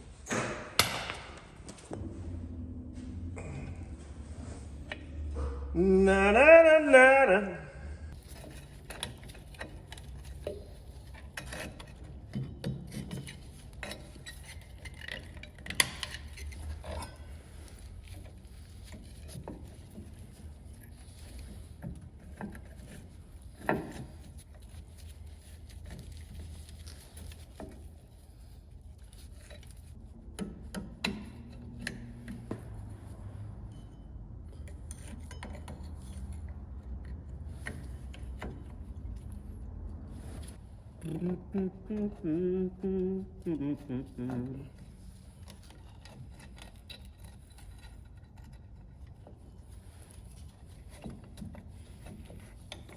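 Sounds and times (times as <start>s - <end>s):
metal tools clinking and tapping: 33.6s - 38.7s
low steady hum: 39.0s - 46.0s.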